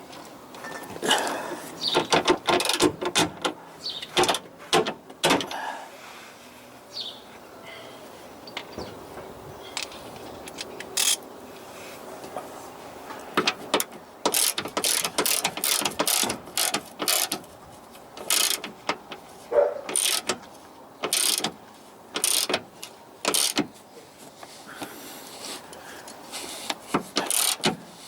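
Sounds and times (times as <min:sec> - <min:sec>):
socket ratchet wrench clicking: 0:13.8 - 0:17.4, 0:18.2 - 0:18.7, 0:19.9 - 0:20.4, 0:21.0 - 0:21.5, 0:22.2 - 0:22.6, 0:23.2 - 0:23.6, 0:27.2 - 0:27.7.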